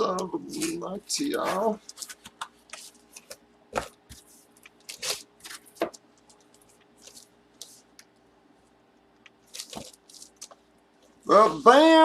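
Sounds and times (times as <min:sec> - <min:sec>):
packaging crinkling: 0:01.4 - 0:08.0, 0:09.3 - 0:10.6.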